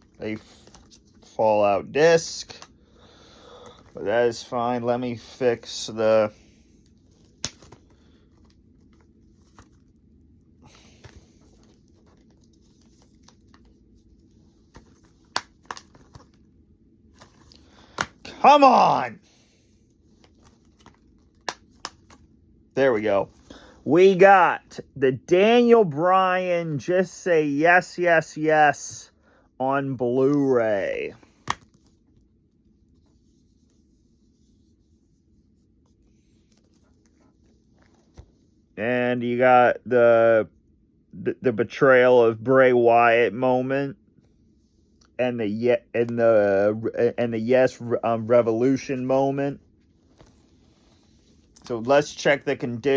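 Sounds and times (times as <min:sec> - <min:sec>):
packaging crinkling: 0:10.8 - 0:16.5.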